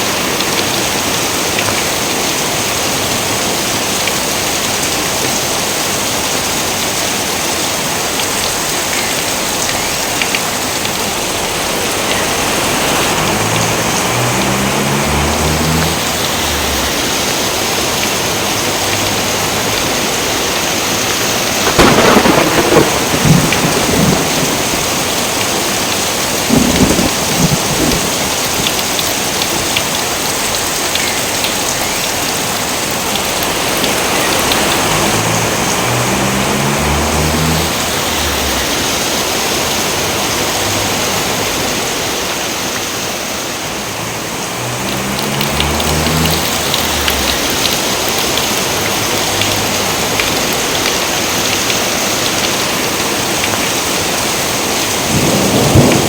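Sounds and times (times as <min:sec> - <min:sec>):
heavy rain: 0:00.0 - 0:56.0
thunder claps rumbling: 0:21.3 - 0:29.1, 0:33.2 - 0:41.7, 0:43.9 - 0:50.6, 0:54.9 - 0:56.0.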